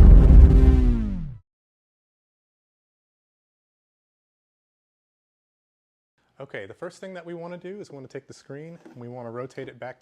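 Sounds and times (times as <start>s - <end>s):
bass-heavy music sting: 0.0s - 1.4s.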